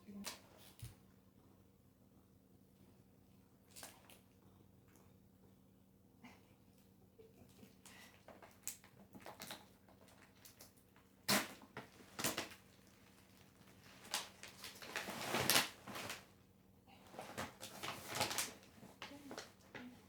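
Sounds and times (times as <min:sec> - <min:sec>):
scraping rustling noise: 0:13.9 - 0:16.3.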